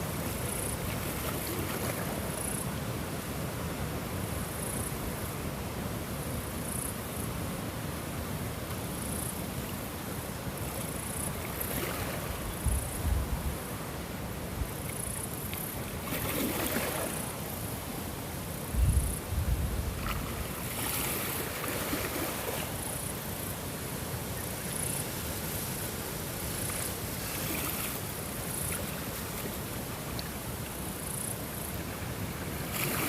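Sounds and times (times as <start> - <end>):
waves washing: 10.9 - 12.7, 14.0 - 33.0
wind buffeting microphone: 18.7 - 20.4.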